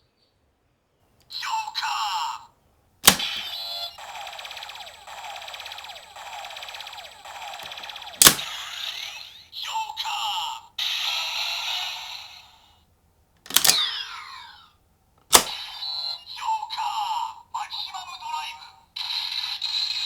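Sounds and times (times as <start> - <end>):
pulsing electronic loop: 4.0 - 8.3.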